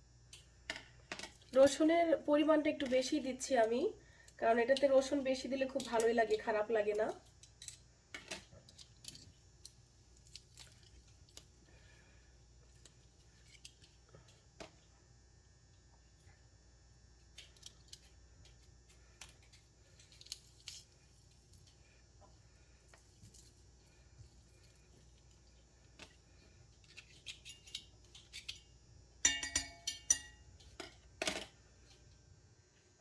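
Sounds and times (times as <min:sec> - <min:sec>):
kitchen utensils clicking and tapping: 0:29.2 - 0:31.5.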